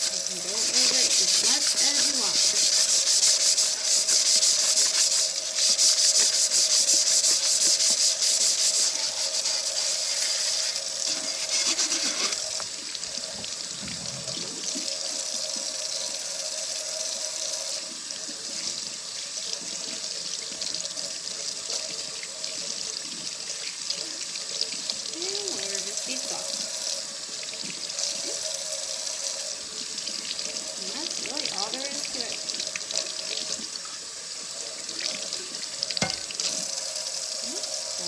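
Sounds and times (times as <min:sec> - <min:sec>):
hand sanding strokes: 0:00.0 - 0:12.5
tap water running into sink: 0:00.0 - 0:38.0.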